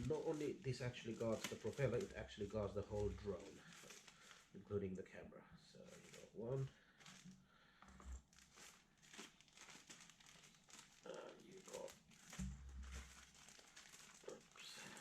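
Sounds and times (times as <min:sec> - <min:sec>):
packaging crinkling: 0:00.0 - 0:04.6, 0:05.8 - 0:15.0.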